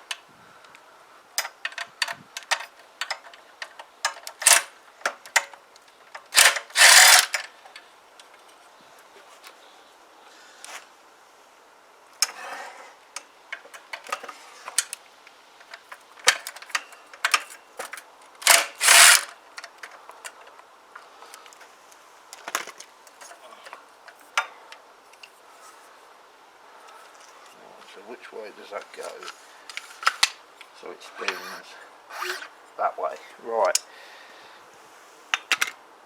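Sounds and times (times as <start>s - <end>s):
tools and metal parts clattering: 1.4s - 7.8s, 13.5s - 15.0s, 15.6s - 20.5s, 29.0s - 30.4s
loud scraping rattle: 6.2s - 7.6s, 18.4s - 19.4s, 31.3s - 32.6s.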